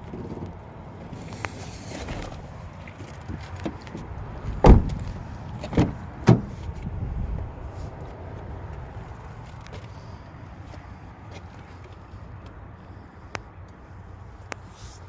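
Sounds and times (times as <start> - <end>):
car doors thumping shut: 1.9 - 2.7, 4.5 - 6.5.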